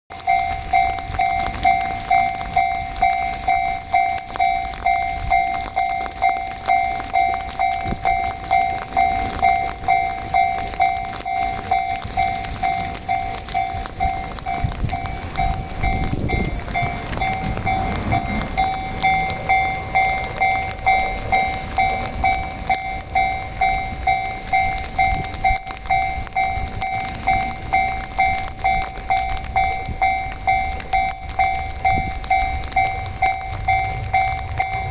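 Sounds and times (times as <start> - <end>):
level crossing alarm ringing: 0.1 - 34.9
train wheels rumbling on rails: 0.1 - 34.9.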